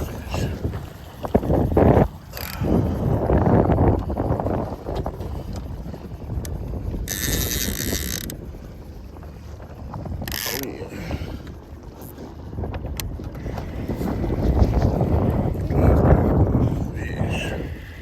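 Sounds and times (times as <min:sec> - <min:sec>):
low rumble of wind and water: 0:00.0 - 0:18.0
fishing reel winding with ticks: 0:01.5 - 0:03.0, 0:06.4 - 0:08.4, 0:10.2 - 0:10.8.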